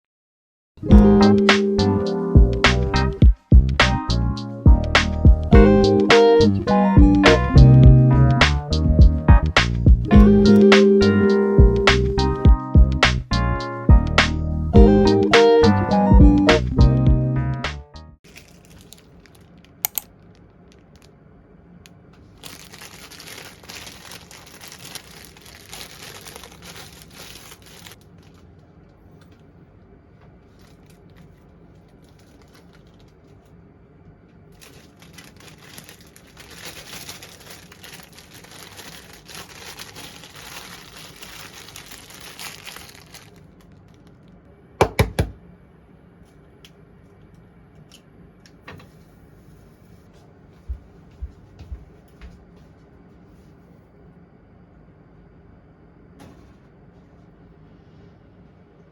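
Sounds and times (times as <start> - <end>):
plastic or paper crinkling: 18.2 - 21.1, 22.2 - 28.5, 30.5 - 33.5, 34.5 - 44.4
loud double knock: 44.8 - 45.4.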